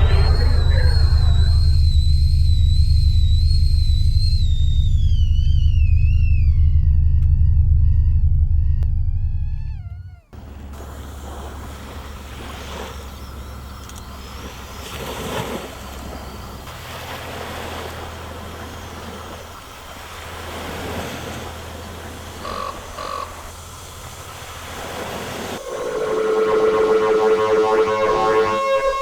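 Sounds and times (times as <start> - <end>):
short beeps: 0.0 - 7.4, 25.6 - 29.0
music: 0.0 - 10.4, 25.6 - 29.0
low steady rumble: 0.0 - 12.3.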